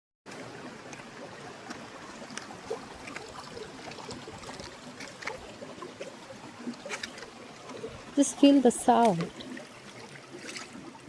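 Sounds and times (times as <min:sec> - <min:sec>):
water flowing over stones: 0:00.3 - 0:11.0.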